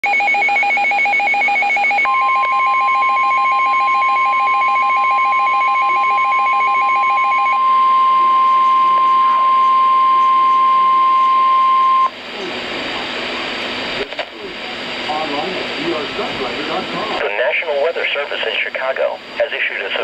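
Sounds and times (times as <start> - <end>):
steady attention tone: 0.0 - 12.5.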